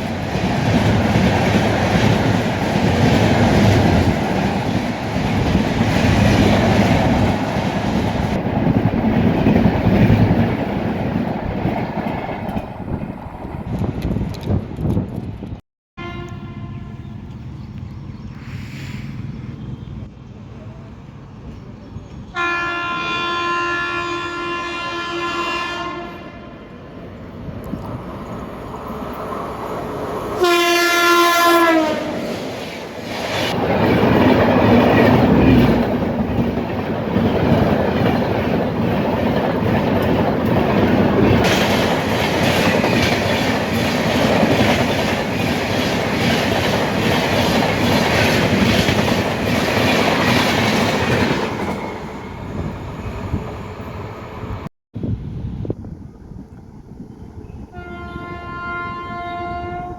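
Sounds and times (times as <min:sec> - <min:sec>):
train coaches rushing past: 0:00.0 - 0:15.6, 0:18.3 - 0:54.7
train horn blasts: 0:16.0 - 0:17.2, 0:22.3 - 0:26.6, 0:30.4 - 0:32.3, 0:57.7 - 0:59.9.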